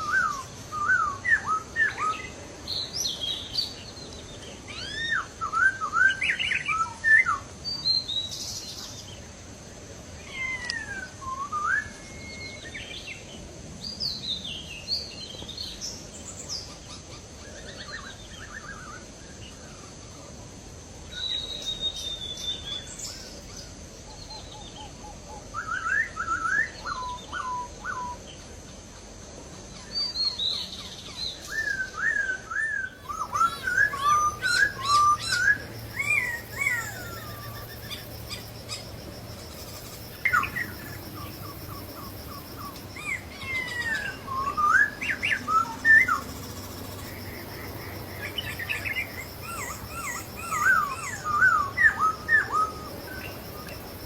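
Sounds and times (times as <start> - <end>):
bird singing whistled phrases: 0.0 - 2.3, 4.7 - 8.3, 10.4 - 12.9, 25.5 - 28.2, 31.3 - 38.8, 40.2 - 41.8, 42.6 - 46.3, 48.6 - 53.7.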